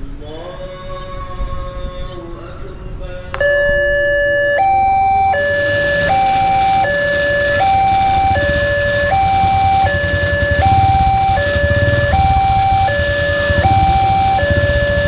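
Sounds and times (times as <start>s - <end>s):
level crossing two-tone alarm: 3.4s - 15.0s.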